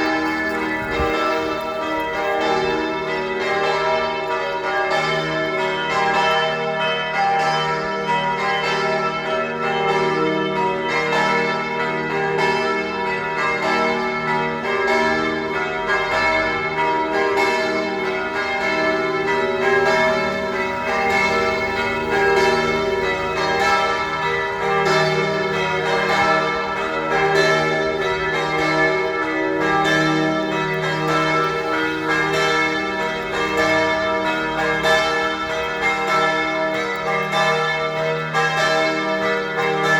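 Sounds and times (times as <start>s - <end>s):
church bells pealing: 0.0s - 39.9s.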